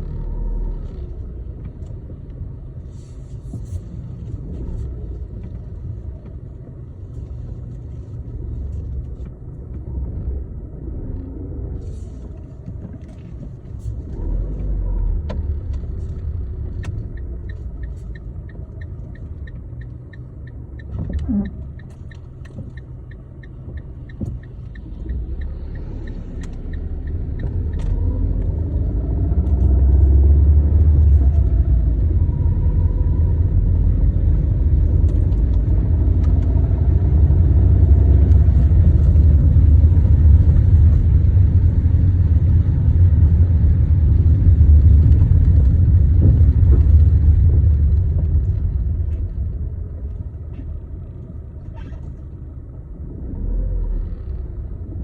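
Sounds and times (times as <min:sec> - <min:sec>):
car engine rumble: 0:00.0 - 0:55.0
light regular ticks: 0:15.3 - 0:28.7.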